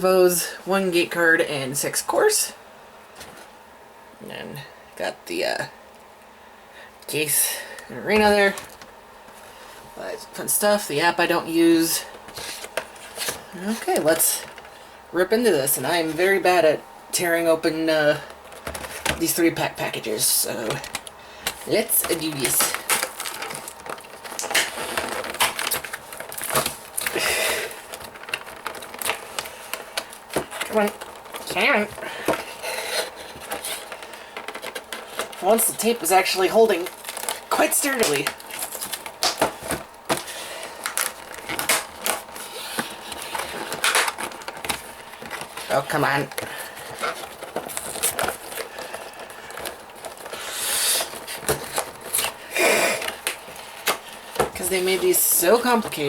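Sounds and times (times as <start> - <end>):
tape ripping: 20.7 - 35.4, 36.8 - 56.0
packaging torn open by hand: 22.3 - 31.6.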